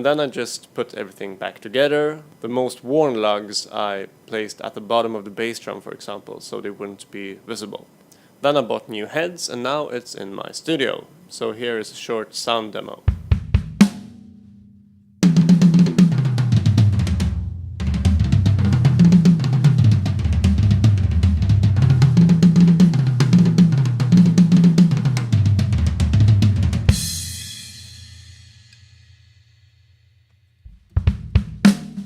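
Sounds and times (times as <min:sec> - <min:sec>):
drum kit groove: 0:13.0 - 0:29.2, 0:30.7 - 0:32.0
cymbal ringing: 0:13.8 - 0:15.3, 0:27.0 - 0:30.1.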